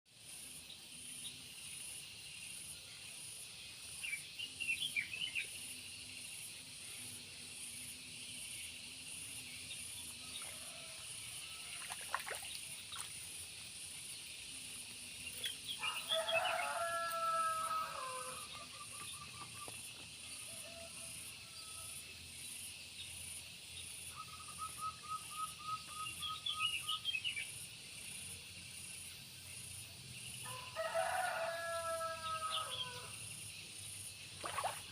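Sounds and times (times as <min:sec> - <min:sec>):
steady high-pitched hiss: 0:00.1 - 0:34.9
rooster crowing: 0:10.4 - 0:11.8, 0:15.8 - 0:18.7, 0:30.4 - 0:33.1.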